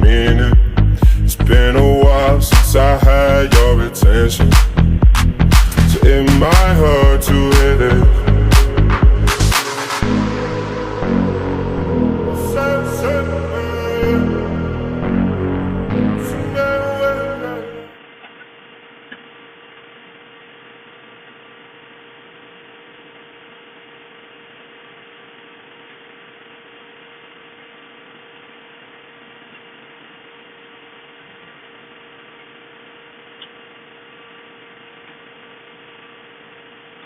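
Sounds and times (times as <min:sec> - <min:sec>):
electrical hum: 0:00.0 - 0:19.1.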